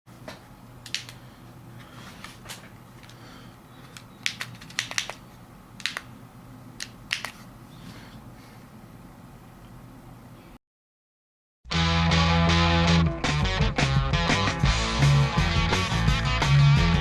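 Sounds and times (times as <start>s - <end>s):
sharp clicks and crackles: 0.8s - 1.2s, 3.9s - 5.2s.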